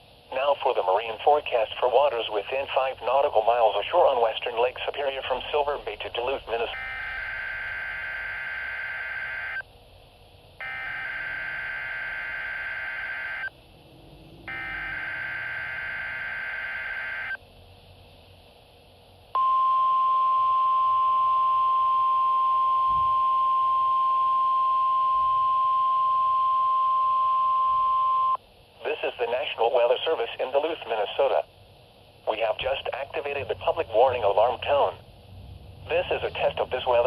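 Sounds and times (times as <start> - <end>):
loud steady alarm tone: 5.2 - 9.6, 10.6 - 13.6, 14.4 - 17.4.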